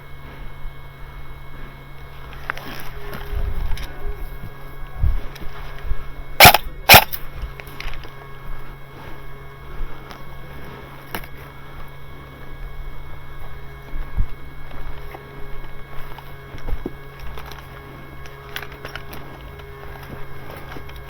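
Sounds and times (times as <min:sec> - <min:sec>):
rustling and thumps of movement: 0:00.0 - 0:21.0
airsoft gun shots: 0:06.4 - 0:07.2.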